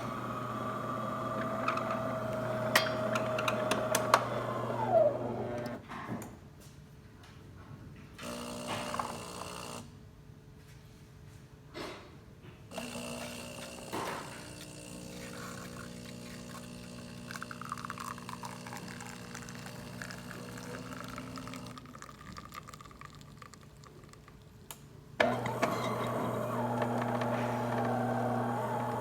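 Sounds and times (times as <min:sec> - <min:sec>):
espresso machine pump humming: 0:00.0 - 0:05.8, 0:08.2 - 0:09.8, 0:12.8 - 0:24.2, 0:25.2 - 0:29.0
espresso pouring into cup: 0:12.8 - 0:24.4, 0:25.2 - 0:29.0.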